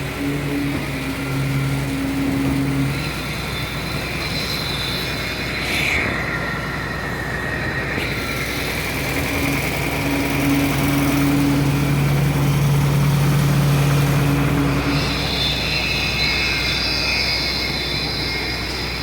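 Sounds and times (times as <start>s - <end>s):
construction machinery engine: 0.0s - 19.0s.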